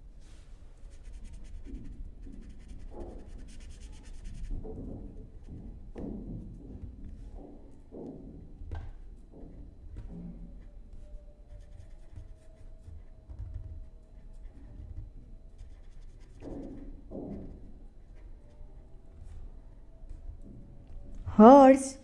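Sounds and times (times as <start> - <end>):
pen scratching on paper: 11.5 - 13.1, 14.2 - 16.8.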